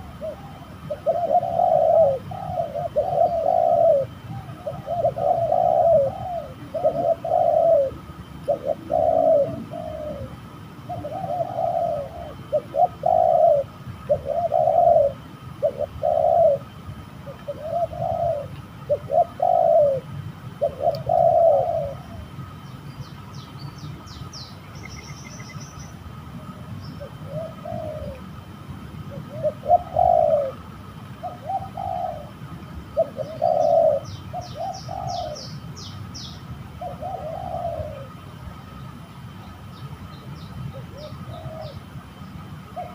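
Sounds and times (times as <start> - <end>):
dove cooing: 0.0 - 22.6, 24.0 - 35.7, 36.7 - 38.4, 40.7 - 41.9, 42.6 - 42.9
small bird chirping: 22.6 - 26.0, 33.0 - 36.5.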